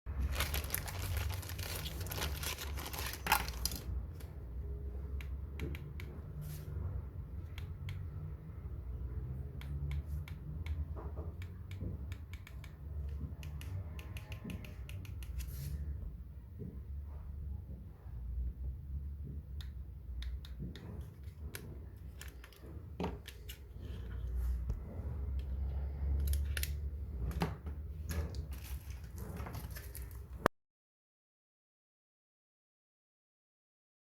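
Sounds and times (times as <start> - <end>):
plastic remote rustling: 0.2 - 4.3
remote control clicks and taps: 5.1 - 6.2, 11.4 - 15.4.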